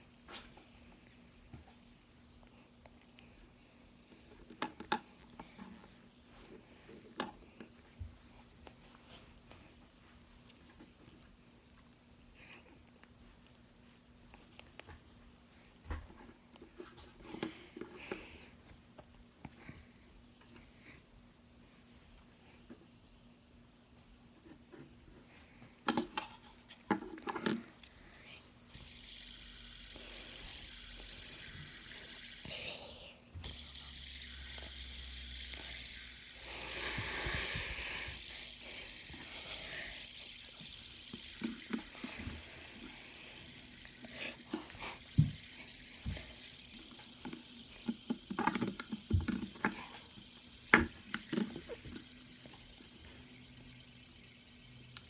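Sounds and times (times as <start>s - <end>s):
fidget spinners whirring: 25.9s - 55.0s.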